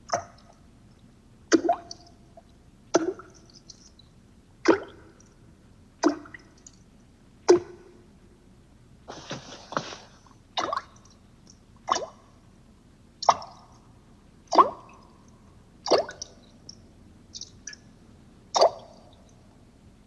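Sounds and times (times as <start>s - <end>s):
water droplets dripping: 1.5s - 5.4s, 6.0s - 6.8s, 14.5s - 17.9s.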